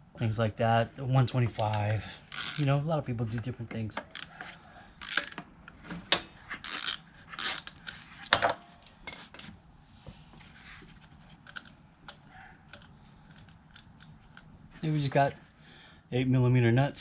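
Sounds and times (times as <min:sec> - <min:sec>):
socket wrench clinking on nuts: 0:05.0 - 0:05.4.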